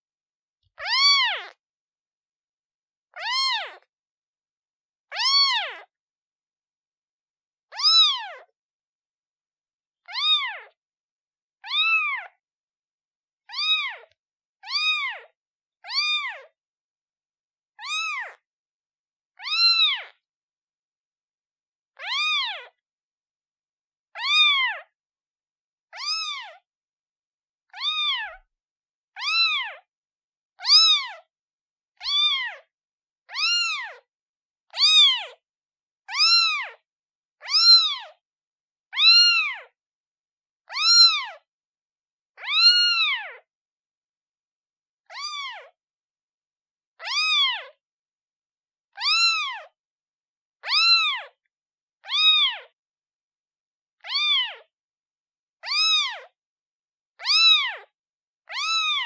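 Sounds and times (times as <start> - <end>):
kitten meowing: 0.8 - 1.6, 3.1 - 3.9, 5.1 - 5.9, 7.7 - 8.5, 10.0 - 10.8, 11.6 - 12.4, 13.5 - 16.5, 17.8 - 18.4, 19.4 - 20.1, 22.0 - 22.8, 24.2 - 24.9, 25.9 - 26.6, 27.7 - 28.5, 29.1 - 29.9, 30.6 - 31.3, 32.0 - 32.7, 33.3 - 34.1, 34.7 - 35.4, 36.1 - 36.8, 37.4 - 38.2, 38.9 - 39.8, 40.7 - 41.4, 42.4 - 43.5, 45.1 - 45.8, 47.0 - 47.8, 49.0 - 49.8, 50.6 - 51.4, 52.0 - 52.8, 54.0 - 54.7, 55.6 - 56.3, 57.2 - 57.9, 58.5 - 59.0.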